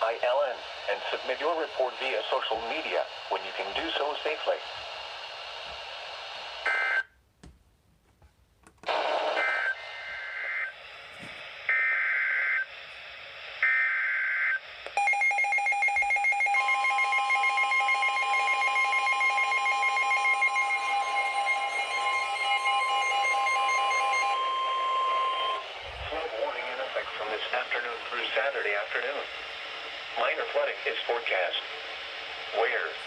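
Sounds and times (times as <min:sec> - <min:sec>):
steady attention signal tone: 0:16.0 - 0:25.7.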